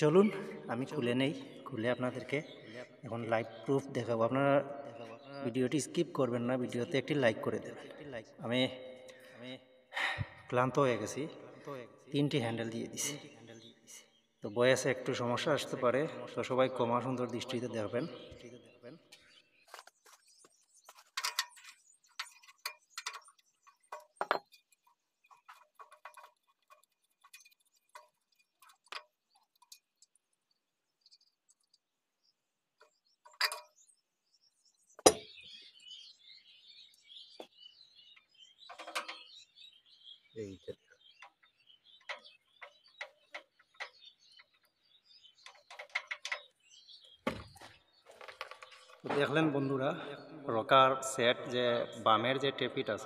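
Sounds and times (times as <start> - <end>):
rocker arm clicking metal on metal: 21.0 - 30.2, 33.2 - 33.8, 45.4 - 46.6.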